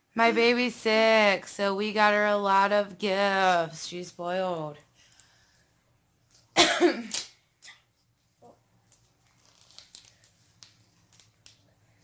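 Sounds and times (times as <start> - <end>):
faint crinkling: 7.6 - 12.0
packaging ripping: 8.8 - 11.7.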